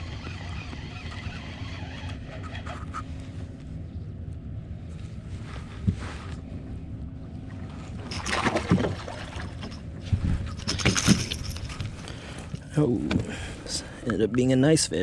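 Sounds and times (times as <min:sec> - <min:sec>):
wind rumble on microphone: 0:07.5 - 0:13.4
water splashing: 0:08.0 - 0:09.7.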